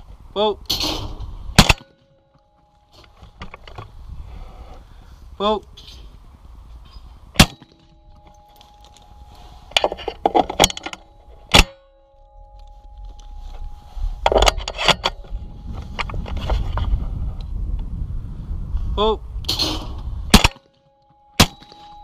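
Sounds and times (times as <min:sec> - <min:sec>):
faint ringing tone: 0:02.0 - 0:05.2, 0:06.8 - 0:17.3, 0:20.7 - 0:22.0.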